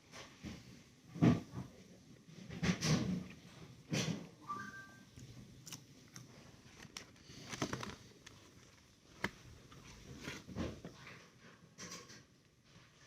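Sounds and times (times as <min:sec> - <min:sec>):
faint clicks and rustles: 0:05.2 - 0:13.0.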